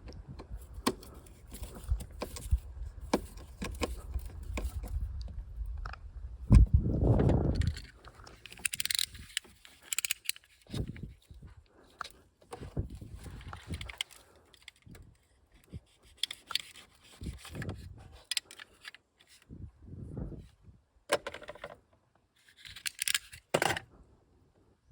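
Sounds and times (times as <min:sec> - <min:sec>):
tool clicks and scrapes: 0:00.4 - 0:05.0, 0:07.4 - 0:19.4, 0:22.4 - 0:23.9.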